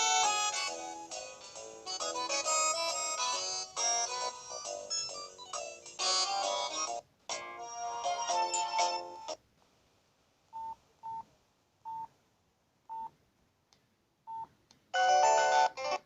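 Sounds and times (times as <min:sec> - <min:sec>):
polyphonic phone ringtone: 0:15.0 - 0:16.0.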